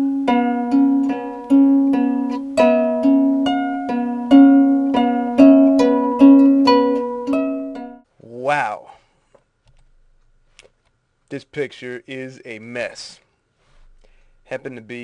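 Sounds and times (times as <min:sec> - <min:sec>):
plucked-string music: 0:00.0 - 0:08.0.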